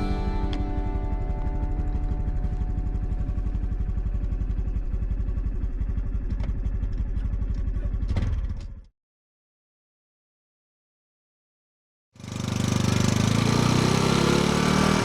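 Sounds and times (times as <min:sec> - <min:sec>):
motorcycle engine idling: 0:00.0 - 0:08.2.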